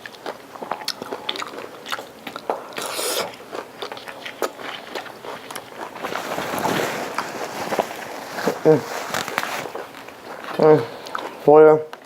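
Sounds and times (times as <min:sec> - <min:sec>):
person biting and chewing food: 0:00.0 - 0:11.4
crunchy bite: 0:00.1 - 0:06.0.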